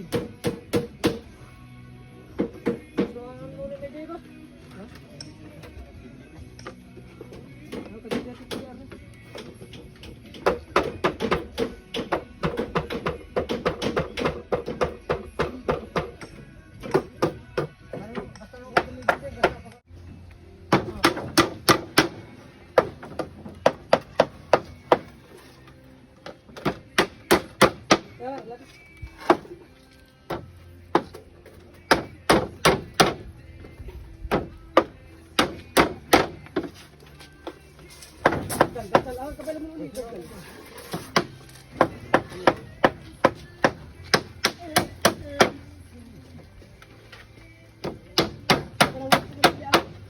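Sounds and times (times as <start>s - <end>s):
hammer strikes on metal: 0.0s - 1.3s, 9.4s - 19.6s, 20.7s - 22.2s, 31.9s - 33.2s, 41.2s - 45.6s, 47.8s - 50.0s.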